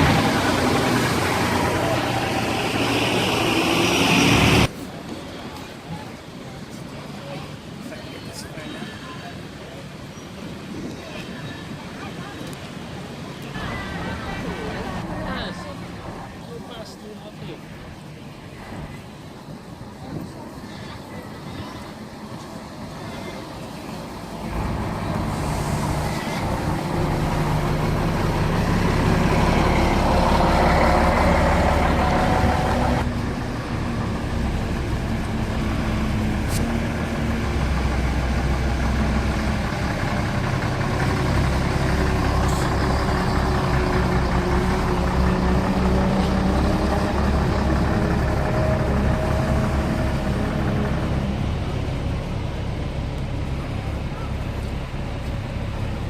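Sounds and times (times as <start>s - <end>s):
heavy vehicle engine running: 0.0s - 4.8s, 22.3s - 56.0s.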